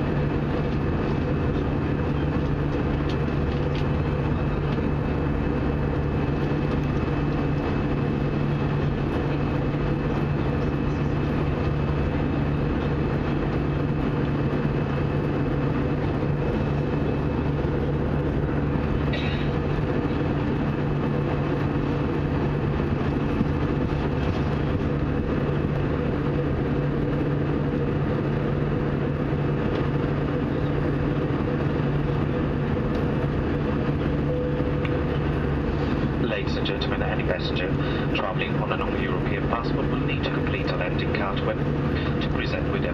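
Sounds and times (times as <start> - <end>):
airplane cabin drone: 0.0 - 42.9
faint high whine: 33.9 - 42.9.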